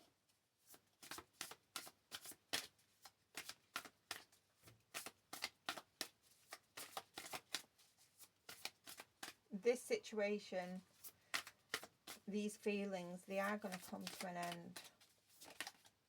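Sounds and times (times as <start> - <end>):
cards snapping while flicked: 5.0 - 7.6.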